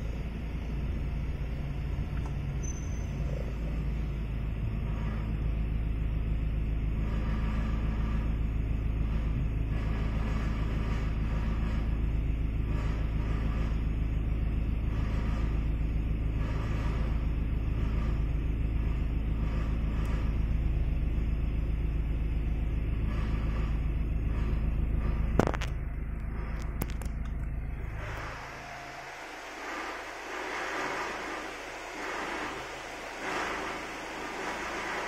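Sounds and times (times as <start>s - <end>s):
car engine droning: 0.0s - 35.0s
recurring abnormal car noise: 0.0s - 35.0s.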